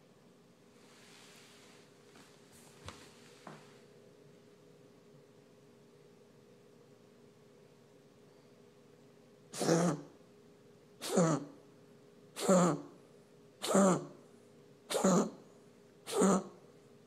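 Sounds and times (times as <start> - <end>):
pet coughing: 9.5 - 10.2, 11.0 - 11.6, 12.4 - 13.0, 13.6 - 14.2, 14.9 - 16.6.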